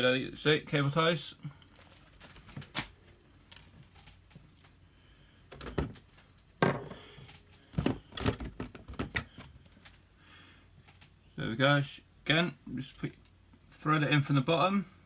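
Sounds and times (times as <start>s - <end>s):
rustling: 1.7s - 4.8s.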